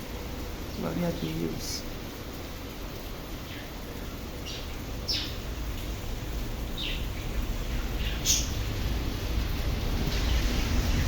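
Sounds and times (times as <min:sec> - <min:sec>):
heavy rain hissing: 0:00.0 - 0:11.0
birds chirping: 0:03.4 - 0:05.9, 0:06.7 - 0:08.6.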